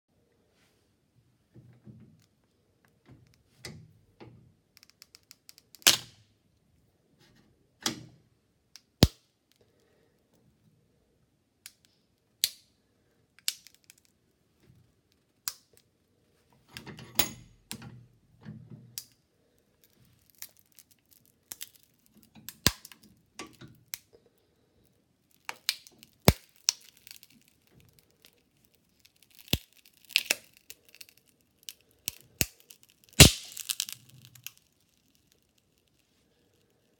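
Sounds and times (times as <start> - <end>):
phone casing cracking and snapping: 32.0 - 34.6.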